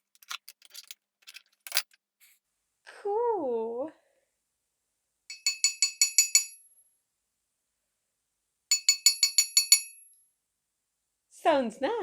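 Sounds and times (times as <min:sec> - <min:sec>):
chisel bits clinking together: 0:00.0 - 0:01.9.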